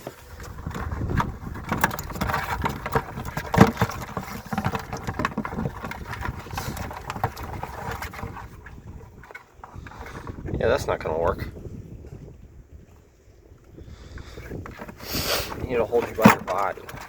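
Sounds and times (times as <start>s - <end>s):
wind rumble on microphone: 0.0s - 17.0s.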